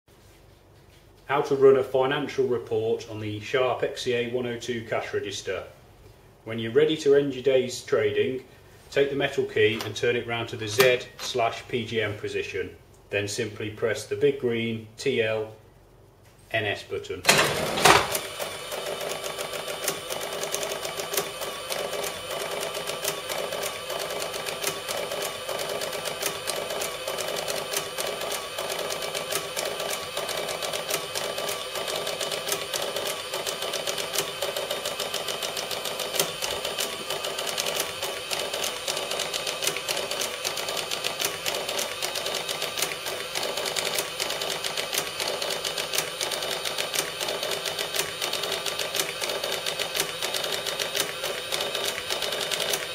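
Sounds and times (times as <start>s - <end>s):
receipt printer printing: 17.3s - 52.9s.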